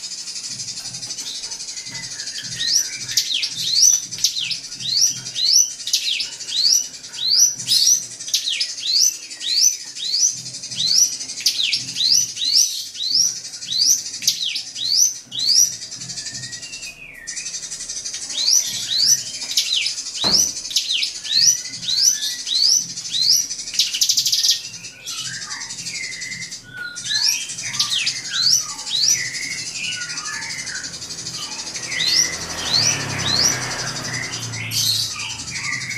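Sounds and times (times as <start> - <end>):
bird singing whistled notes: 0.0 - 35.9.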